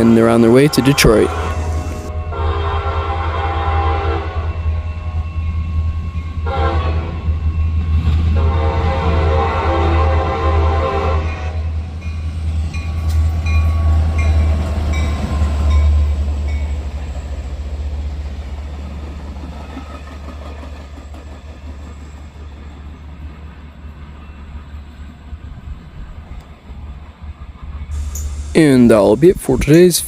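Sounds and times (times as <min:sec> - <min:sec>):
diesel locomotive rumble: 0:00.0 - 0:30.0
train wheels rolling on rail: 0:11.3 - 0:30.0.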